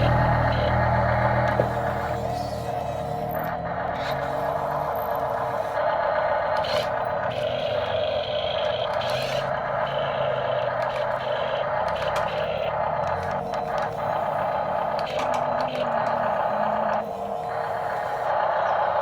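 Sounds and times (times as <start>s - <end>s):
excavator engine drone: 0.0s - 19.0s.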